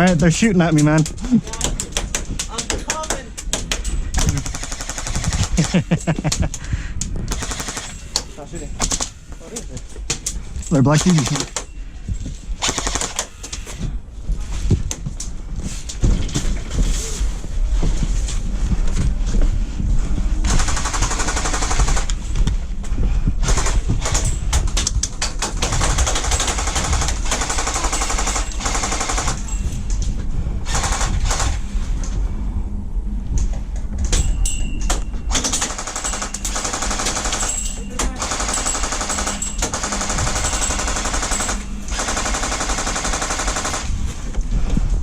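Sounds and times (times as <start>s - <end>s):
airsoft guns firing bursts: 4.2s - 5.8s, 7.3s - 8.0s, 12.6s - 13.3s, 20.5s - 22.1s, 25.4s - 29.5s, 35.3s - 43.9s.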